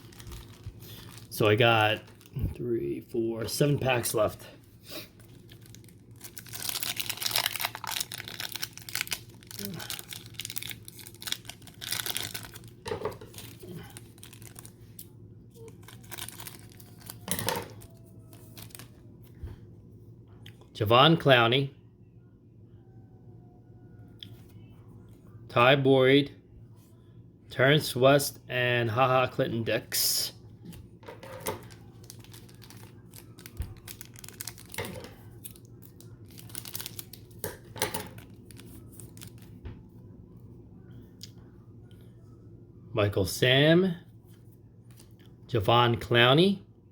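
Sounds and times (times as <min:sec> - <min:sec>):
plastic wrapper crinkling: 0:00.0 - 0:02.4, 0:05.2 - 0:19.0, 0:31.4 - 0:39.6.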